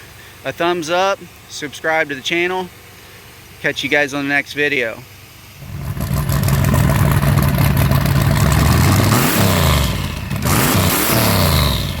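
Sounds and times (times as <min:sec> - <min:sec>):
car engine running: 0:05.4 - 0:12.0.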